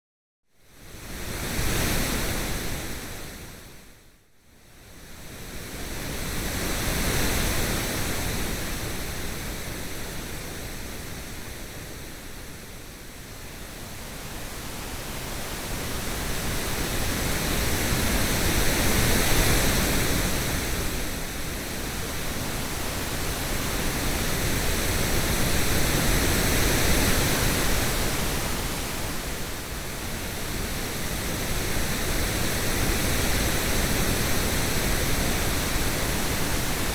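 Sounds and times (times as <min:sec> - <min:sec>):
steady hiss of coloured noise: 0:12.2 - 0:36.9.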